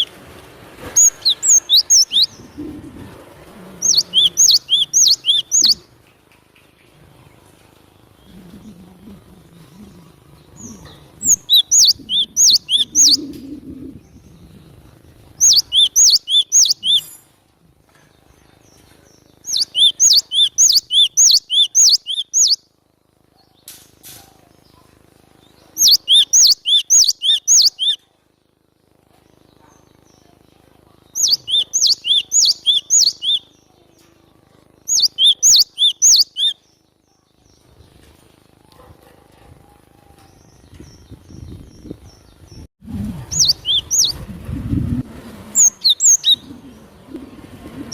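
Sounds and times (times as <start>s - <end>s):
bird singing high notes: 1.0s - 2.5s, 3.8s - 5.8s, 10.6s - 13.4s, 15.4s - 17.1s, 19.5s - 22.6s, 31.2s - 33.5s, 34.9s - 36.6s, 43.3s - 44.2s.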